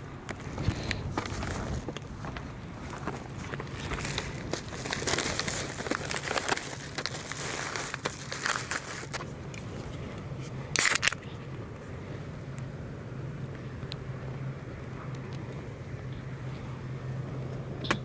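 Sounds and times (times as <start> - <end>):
steady low hum: 0.0 - 18.0
crinkling and rustling handling: 0.2 - 12.7.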